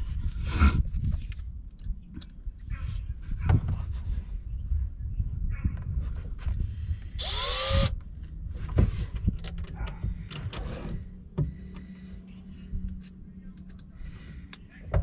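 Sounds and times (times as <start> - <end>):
cordless drill whining: 7.2 - 8.0
parts knocking and clattering: 7.2 - 12.0.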